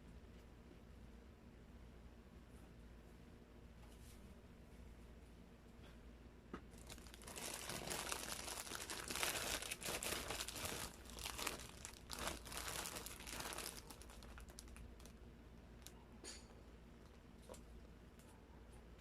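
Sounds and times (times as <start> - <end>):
plastic packaging crinkling: 6.8 - 15.2.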